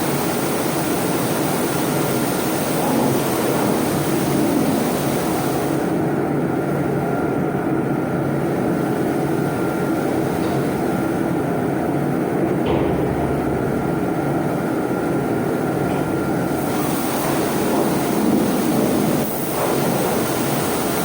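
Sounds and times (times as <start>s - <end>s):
water jet on steel deck: 0.0s - 21.0s.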